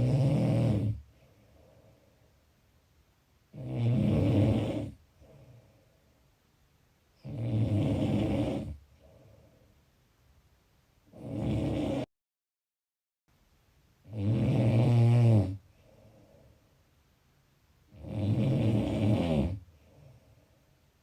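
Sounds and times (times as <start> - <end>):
loud snores: 0.0 - 1.1, 3.5 - 5.5, 7.2 - 9.2, 11.1 - 12.1, 14.0 - 15.6, 17.9 - 20.3
quiet breathing: 0.0 - 10.2, 15.0 - 21.0.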